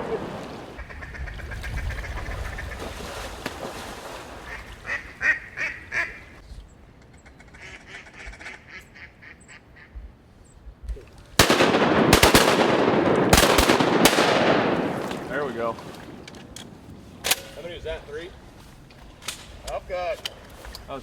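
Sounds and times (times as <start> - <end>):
ducks quacking: 0.8 - 3.0, 4.4 - 6.4, 7.5 - 10.0
shotgun blasts: 11.4 - 17.6.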